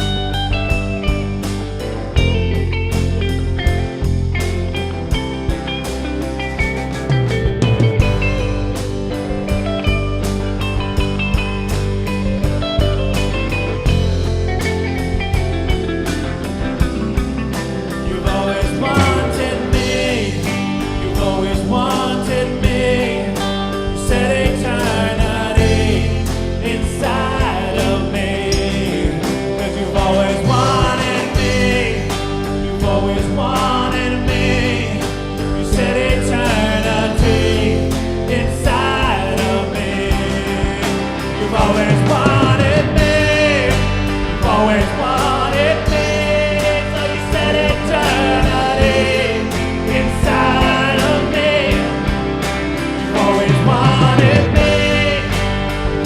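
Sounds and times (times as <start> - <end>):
band playing worship song: 0.0 - 56.0
person singing: 15.0 - 56.0.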